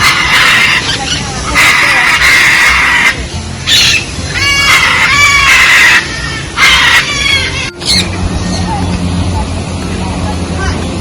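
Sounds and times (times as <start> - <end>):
bird squawks: 0.0 - 8.6
birds screeching: 0.0 - 9.2.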